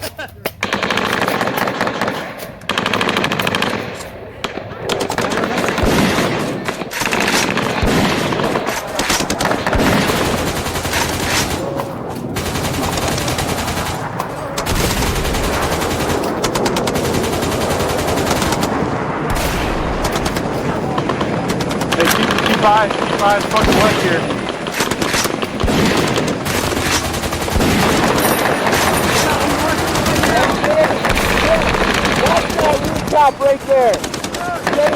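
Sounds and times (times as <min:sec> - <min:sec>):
automatic gunfire: 0:00.6 - 0:34.9.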